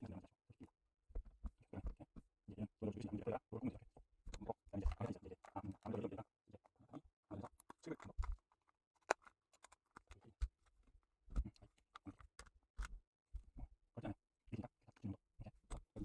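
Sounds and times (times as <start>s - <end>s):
hands handling computer hardware: 7.5s - 13.0s.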